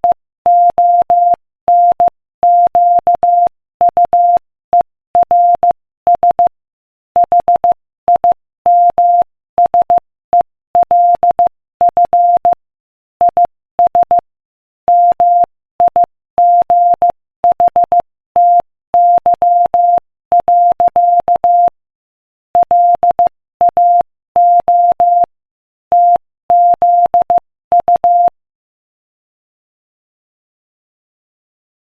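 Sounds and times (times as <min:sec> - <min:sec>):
morse code tone: 0:14.9 - 0:21.7, 0:22.6 - 0:25.3, 0:26.0 - 0:28.3.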